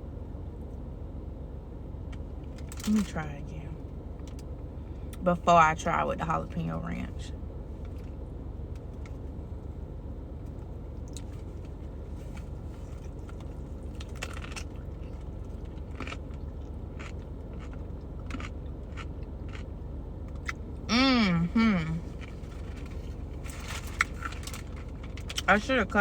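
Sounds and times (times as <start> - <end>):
low car rumble: 0.0 - 26.0
crisp chewing crunches: 11.0 - 20.6, 22.1 - 25.5.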